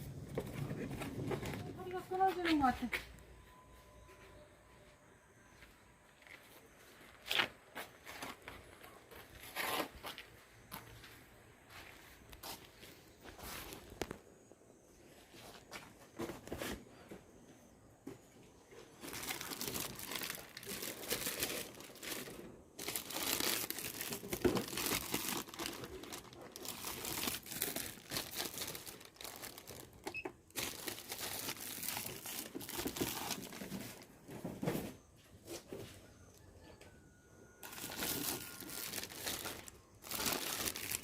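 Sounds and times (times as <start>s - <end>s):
packing material crinkling: 18.9s - 34.1s, 37.6s - 41.0s.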